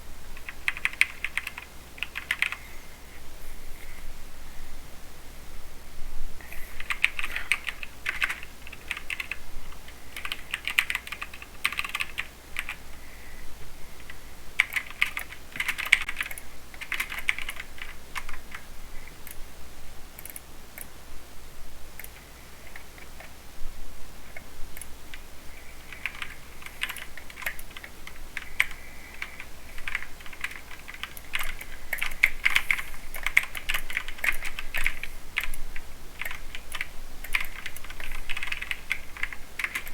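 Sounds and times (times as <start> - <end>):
mechanical keyboard typing: 0.4 - 2.6, 6.8 - 12.8, 14.6 - 18.6, 20.2 - 20.9, 25.9 - 39.9.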